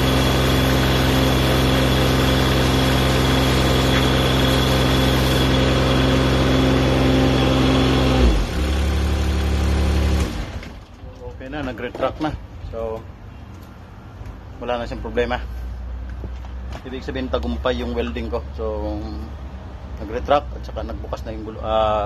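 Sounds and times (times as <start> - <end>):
excavator engine running: 0.0 - 11.1.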